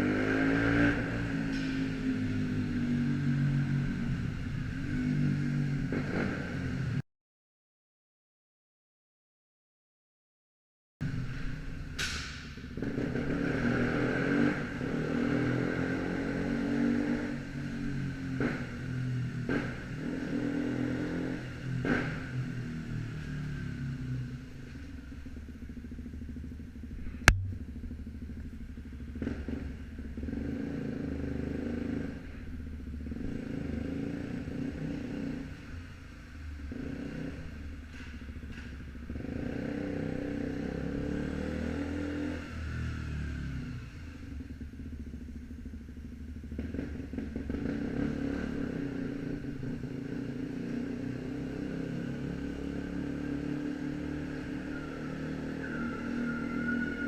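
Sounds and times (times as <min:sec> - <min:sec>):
motorcycle engine revving: 0:00.0 - 0:07.0, 0:11.1 - 0:57.0
sharp crack: 0:27.2 - 0:27.9.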